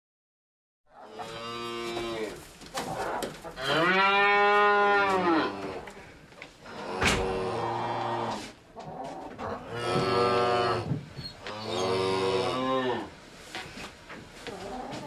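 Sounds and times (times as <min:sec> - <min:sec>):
cattle mooing: 0:01.0 - 0:02.4, 0:03.6 - 0:05.8, 0:06.7 - 0:08.4, 0:09.6 - 0:10.9, 0:11.5 - 0:13.1.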